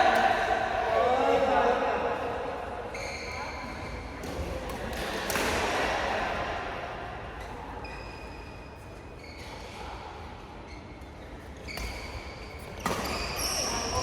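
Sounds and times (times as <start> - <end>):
faint high-pitched squeak: 2.9 - 4.0, 10.7 - 14.0.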